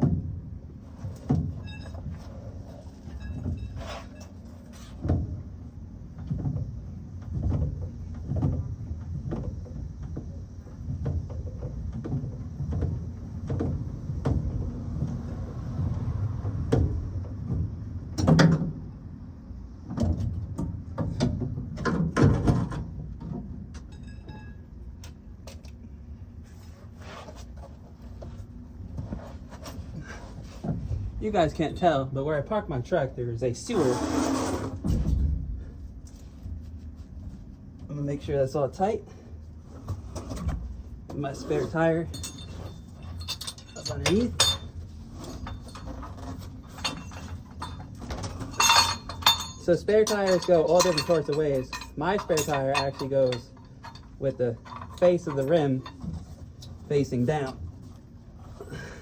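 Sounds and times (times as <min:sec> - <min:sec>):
metal parts clunking and rattling: 0:00.0 - 0:15.4, 0:19.9 - 0:25.7, 0:33.8 - 0:36.4, 0:39.7 - 0:59.0.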